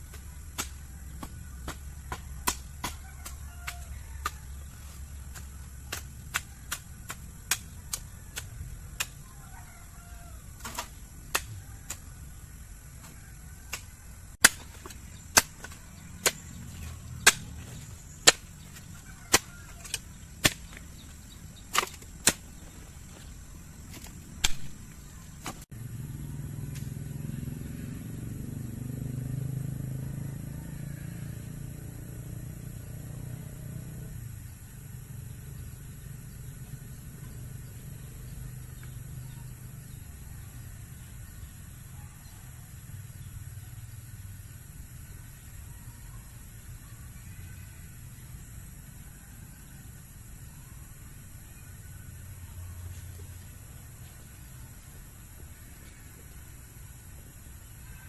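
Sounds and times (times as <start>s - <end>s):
blade chopping plants: 0.0s - 9.3s, 10.6s - 12.2s, 13.0s - 25.7s
steady low rumble: 10.3s - 28.8s.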